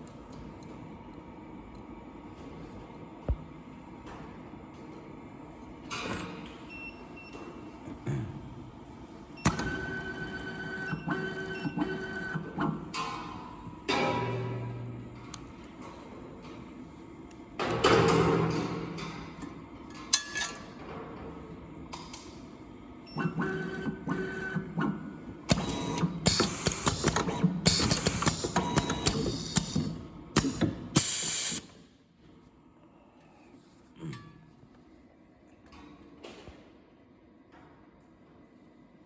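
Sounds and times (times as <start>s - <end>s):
machine clicks and clatter: 23.8s - 31.6s.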